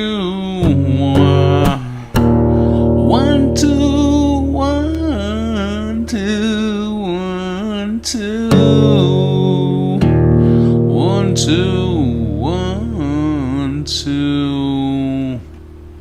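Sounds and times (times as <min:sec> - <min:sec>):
guitar: 0:00.0 - 0:16.0
person singing with vibrato: 0:00.0 - 0:16.0
low bass notes: 0:00.6 - 0:07.0, 0:08.5 - 0:16.0.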